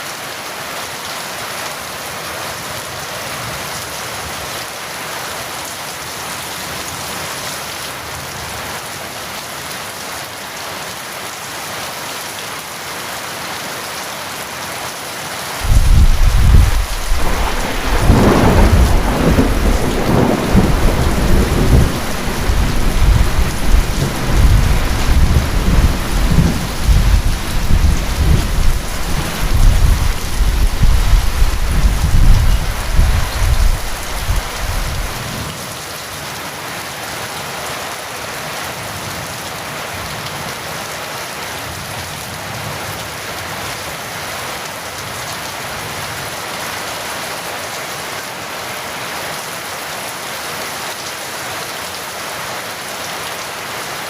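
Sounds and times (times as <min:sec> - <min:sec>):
heavy rain: 0:00.0 - 0:54.0
thunder rumbling: 0:15.6 - 0:35.4.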